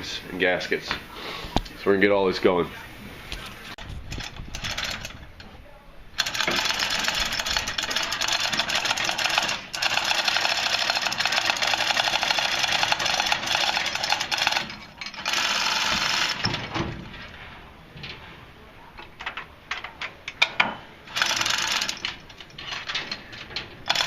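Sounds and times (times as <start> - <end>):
pneumatic impact wrench hammering: 6.2 - 16.9, 20.5 - 23.2.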